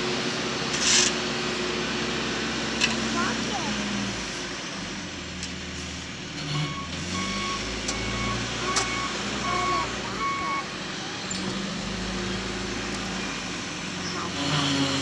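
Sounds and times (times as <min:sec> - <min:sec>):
diesel engine running: 0:00.0 - 0:15.0
backup alarm beeping: 0:06.6 - 0:10.7.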